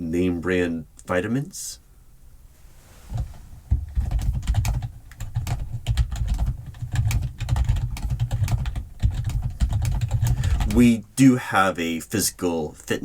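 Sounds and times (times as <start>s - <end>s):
fast keyboard typing: 3.2s - 10.8s.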